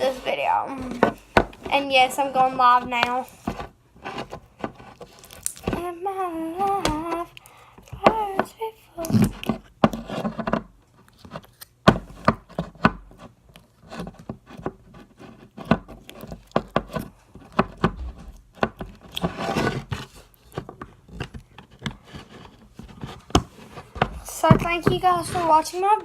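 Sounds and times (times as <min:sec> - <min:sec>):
objects handled on hard surface: 0:00.0 - 0:05.9, 0:06.7 - 0:26.0.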